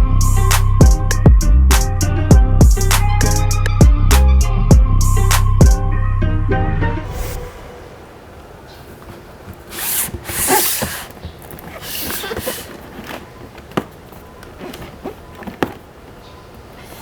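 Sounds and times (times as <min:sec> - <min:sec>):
packaging rustling and tearing: 0:09.6 - 0:16.2.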